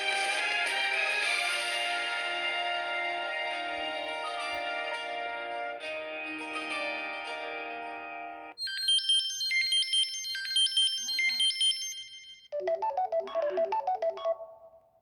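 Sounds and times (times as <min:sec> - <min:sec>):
high-pitched synth ringtone: 0:08.6 - 0:14.9
lower-pitched ringtone tune: 0:08.6 - 0:14.9.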